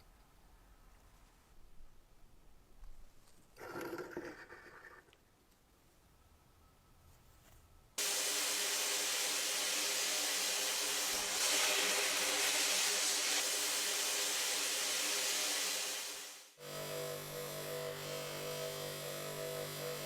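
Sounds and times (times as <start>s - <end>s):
loud hiss of rushing air: 8.0s - 16.6s.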